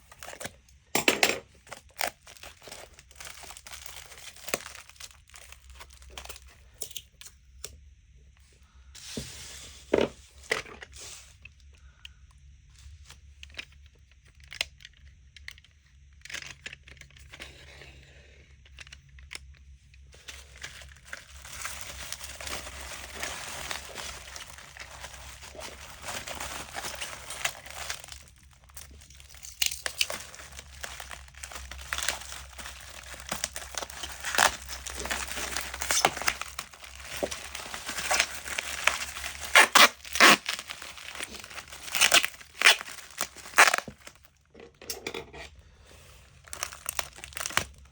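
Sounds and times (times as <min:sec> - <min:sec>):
crinkling and tearing: 0:00.0 - 0:00.6, 0:01.6 - 0:07.3, 0:20.0 - 0:44.5, 0:45.8 - 0:47.9.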